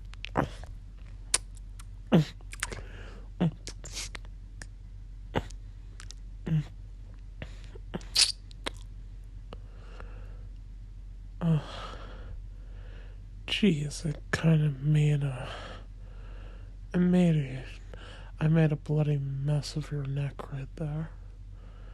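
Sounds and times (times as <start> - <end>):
wet lip smacks and sucking clicks: 0.0 - 0.7, 1.3 - 2.9, 3.5 - 4.8, 5.4 - 6.2, 7.6 - 8.9
low gulps: 0.0 - 6.8, 7.4 - 8.9.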